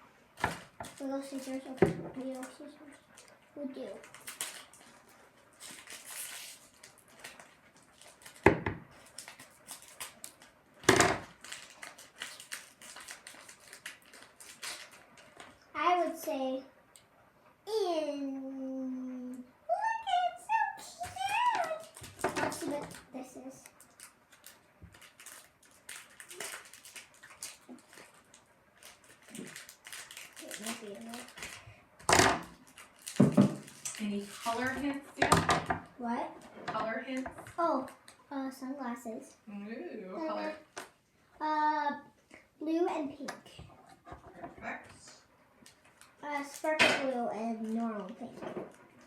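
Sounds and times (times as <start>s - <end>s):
plastic wrapping crinkling: 0.4s - 15.6s, 21.0s - 31.8s, 32.4s - 38.2s, 44.6s - 49.0s.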